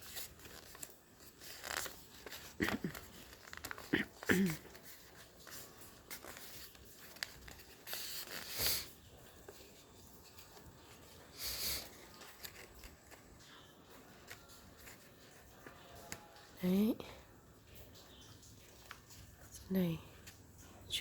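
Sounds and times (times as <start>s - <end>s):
paper crinkles and taps: 0.0s - 16.6s, 17.7s - 20.9s
paper rustling and folding: 0.0s - 16.6s.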